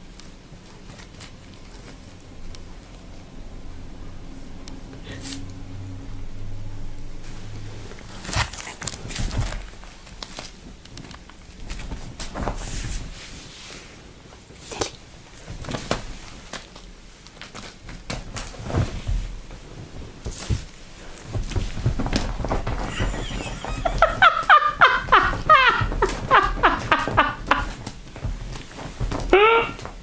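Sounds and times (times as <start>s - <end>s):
cat scampering across floor: 14.8s - 30.0s.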